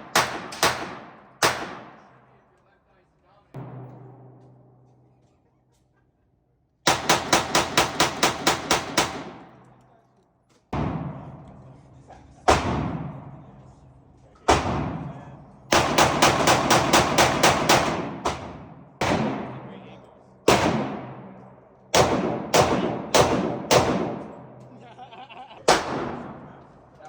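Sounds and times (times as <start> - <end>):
gunshots: 0.0 - 2.3, 3.6 - 5.0, 6.9 - 9.6, 10.7 - 13.6, 14.5 - 24.8, 25.7 - 26.8.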